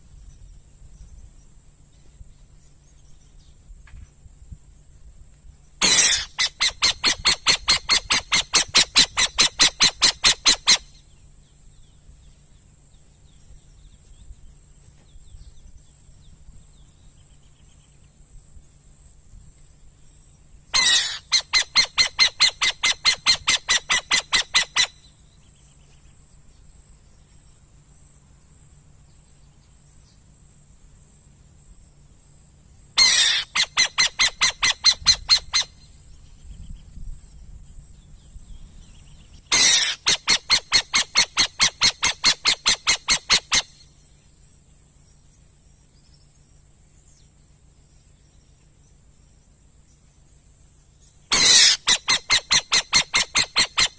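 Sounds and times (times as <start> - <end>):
owl calling harsh notes: 5.8 - 10.9, 20.8 - 25.0, 33.0 - 35.8, 39.5 - 43.8, 51.3 - 53.9.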